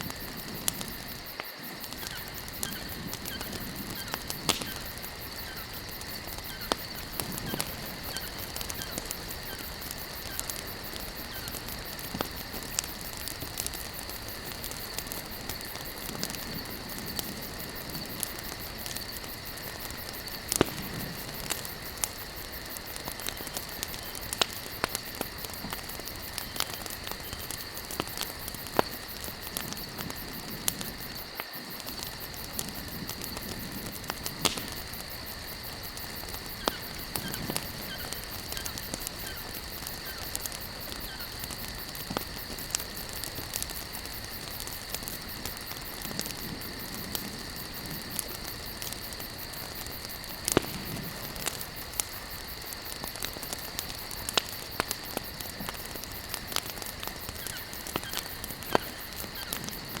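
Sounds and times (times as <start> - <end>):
campfire crackling and popping: 0.0 - 60.0.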